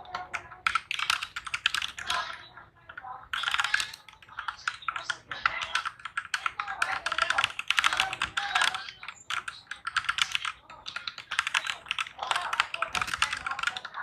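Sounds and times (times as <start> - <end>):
mechanical keyboard fast typing: 0.1 - 2.3, 3.3 - 14.0.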